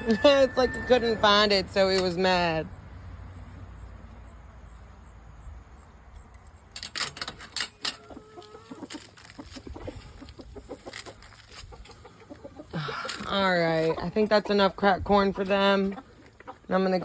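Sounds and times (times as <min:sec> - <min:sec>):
chickens pecking taps and scratches: 0:05.8 - 0:17.0
chickens clucking softly: 0:08.0 - 0:13.0.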